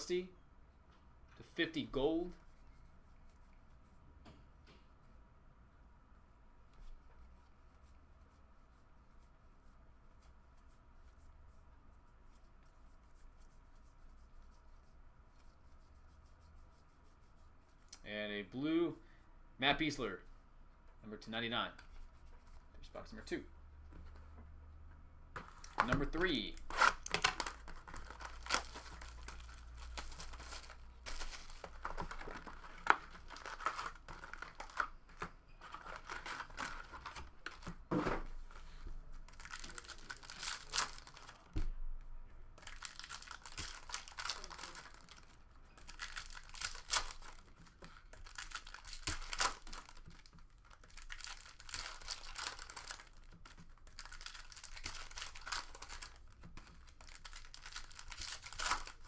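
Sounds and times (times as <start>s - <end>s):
card wrappers tearing and crinkling: 25.4s - 35.0s, 35.6s - 37.7s, 39.3s - 41.6s, 42.6s - 59.0s
cards shuffling: 25.4s - 38.7s.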